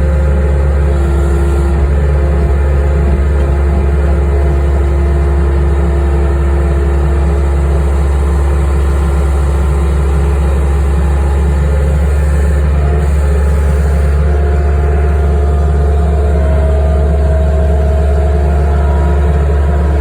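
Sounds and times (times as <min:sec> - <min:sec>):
skid steer engine drone: 0:00.0 - 0:20.0.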